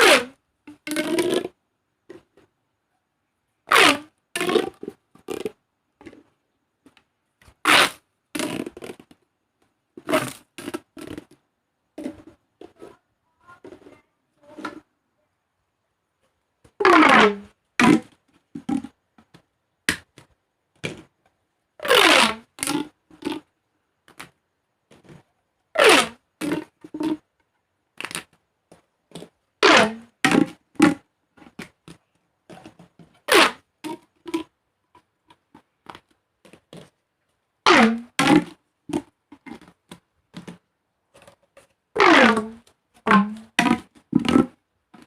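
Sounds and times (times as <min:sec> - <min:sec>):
crackling plastic stretch: 0:00.0 - 0:02.5, 0:03.6 - 0:14.9, 0:16.2 - 0:45.0
plastic pop tubes popping: 0:00.0 - 0:02.5, 0:03.7 - 0:09.2, 0:10.0 - 0:11.4, 0:16.6 - 0:21.1, 0:21.8 - 0:25.2, 0:25.8 - 0:27.2, 0:27.9 - 0:28.5, 0:29.1 - 0:37.0, 0:37.7 - 0:45.0.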